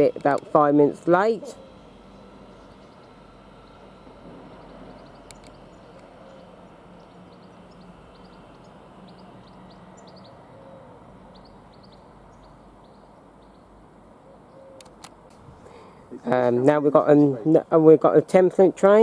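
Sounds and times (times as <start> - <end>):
low hum: 0.0 - 17.8
small birds chirping: 1.4 - 15.0.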